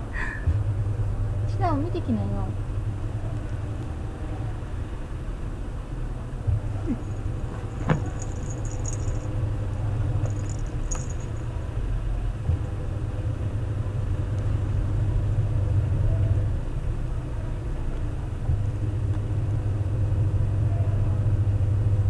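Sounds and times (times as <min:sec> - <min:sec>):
washing machine spin rumble: 0:00.0 - 0:22.0.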